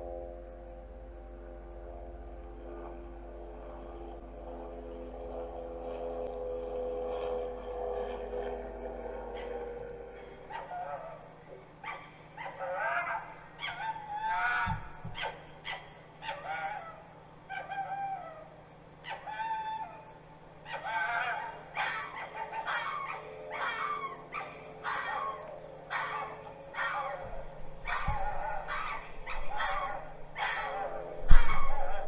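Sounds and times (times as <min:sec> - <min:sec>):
dog whining and crying: 0:10.5 - 0:20.1, 0:20.7 - 0:32.0.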